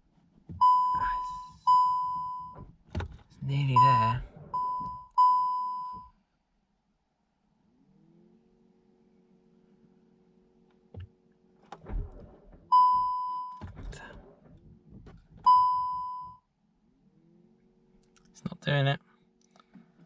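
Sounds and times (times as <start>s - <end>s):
car warning chime: 0.6s - 2.6s, 3.4s - 6.1s, 12.7s - 13.7s, 15.4s - 16.4s.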